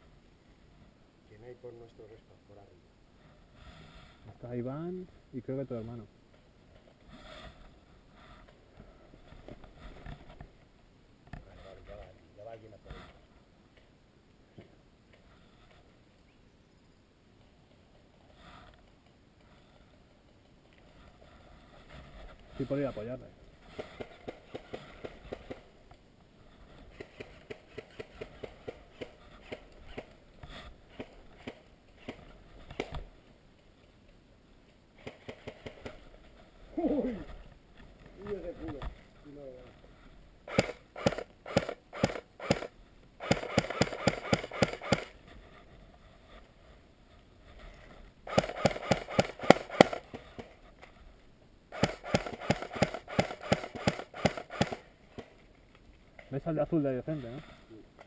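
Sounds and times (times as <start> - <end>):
airsoft gun single shots: 40.5 - 45.1, 48.3 - 50.1, 51.7 - 54.8
airsoft gun rapid fire bursts: 40.5 - 45.2, 48.3 - 50.2, 51.7 - 54.9.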